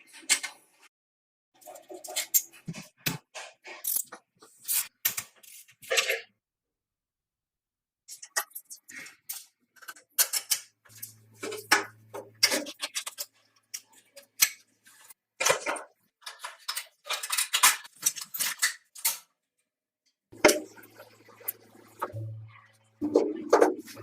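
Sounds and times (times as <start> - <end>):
metal parts clinking and scraping: 3.7 - 6.2, 16.2 - 19.2
low steady hum: 22.0 - 23.0.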